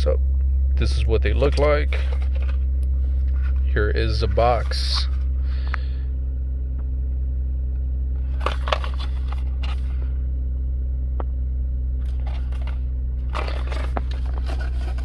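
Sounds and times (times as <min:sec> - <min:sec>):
steady low hum: 0:00.0 - 0:15.0
packaging rustling and crinkling: 0:13.3 - 0:15.0.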